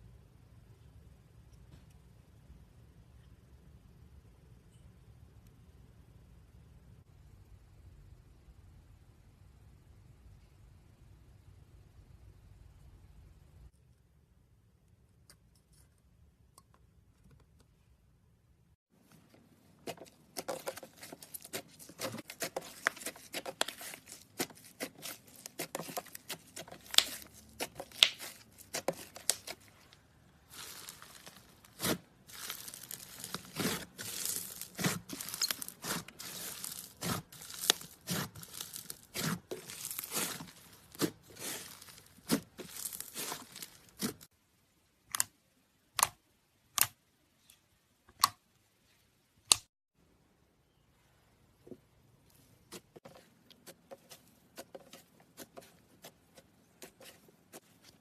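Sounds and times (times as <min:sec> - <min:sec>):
slime crackling and popping: 0:19.9 - 0:29.9, 0:30.5 - 0:44.2.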